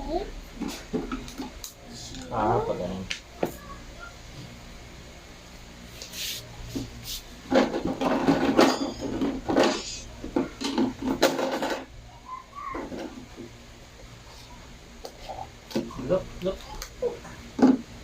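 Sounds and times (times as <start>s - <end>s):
plastic toys clattering: 7.5s - 11.9s.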